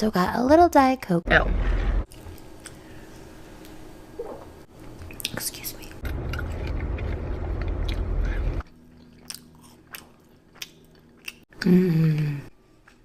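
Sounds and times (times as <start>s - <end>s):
mouth chewing food: 6.0s - 13.0s.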